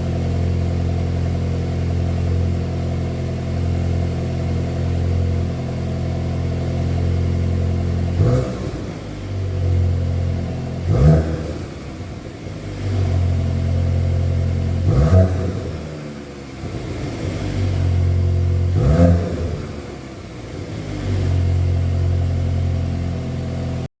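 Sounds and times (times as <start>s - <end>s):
car engine idling: 0.0s - 23.9s
engine revving: 3.1s - 23.9s.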